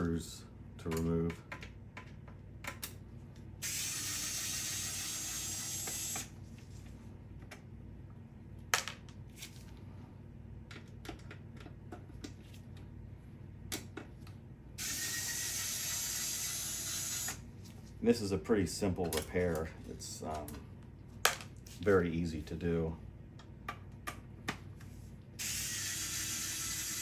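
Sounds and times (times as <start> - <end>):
small clicks and handling noise: 10.6 - 12.9, 19.0 - 20.6
electric screwdriver whirring: 14.8 - 17.4, 25.4 - 27.0.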